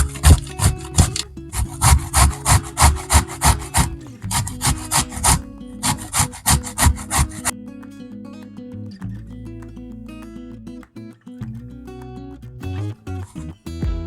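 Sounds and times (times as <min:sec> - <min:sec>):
grating on metal grater: 0:00.0 - 0:07.5
quiet guitar music: 0:00.0 - 0:14.0.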